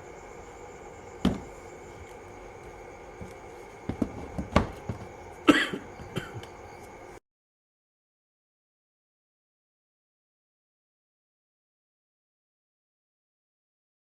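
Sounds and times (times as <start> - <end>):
steady background hum: 0.0 - 7.2.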